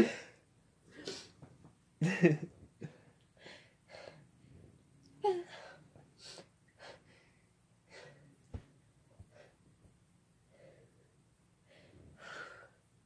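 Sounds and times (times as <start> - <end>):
person gasping breaths: 11.7 - 12.8.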